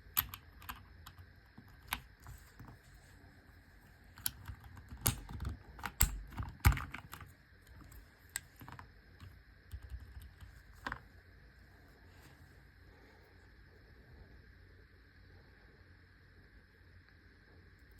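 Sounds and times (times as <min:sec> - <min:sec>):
mechanical keyboard typing: 0:00.1 - 0:02.1, 0:04.2 - 0:07.3, 0:08.6 - 0:11.0.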